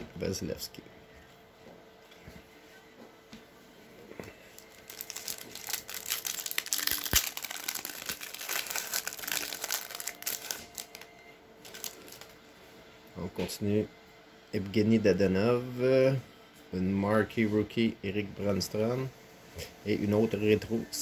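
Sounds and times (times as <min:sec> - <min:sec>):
wrapper tearing and crinkling: 0:04.5 - 0:12.3.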